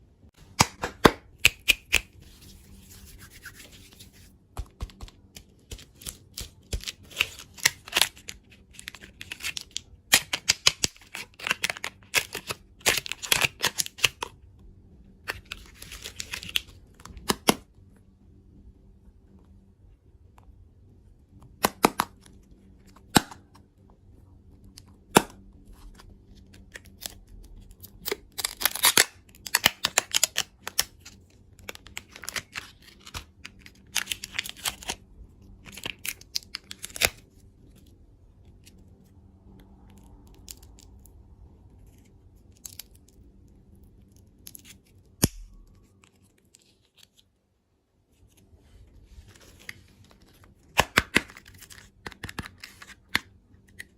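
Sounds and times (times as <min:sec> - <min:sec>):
plastic wrapper tearing and crinkling: 0:05.2 - 0:14.3, 0:26.6 - 0:35.0, 0:35.6 - 0:37.2, 0:49.4 - 0:53.9.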